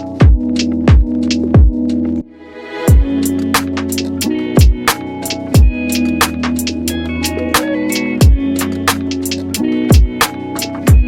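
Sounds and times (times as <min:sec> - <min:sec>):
background music with beat: 0:00.0 - 0:11.0
deep kick drum: 0:00.2 - 0:01.9, 0:02.9 - 0:03.2, 0:04.6 - 0:04.9, 0:05.6 - 0:05.8, 0:08.2 - 0:08.5, 0:09.9 - 0:10.2.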